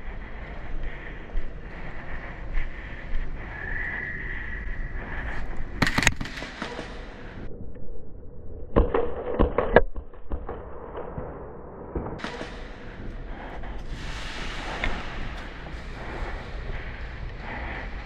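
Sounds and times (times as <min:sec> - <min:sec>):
airsoft guns firing: 0:05.8 - 0:07.4.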